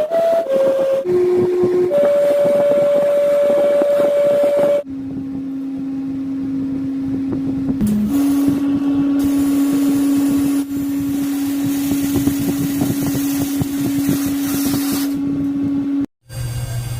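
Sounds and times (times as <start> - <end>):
machine humming and rattling: 4.9 - 16.9.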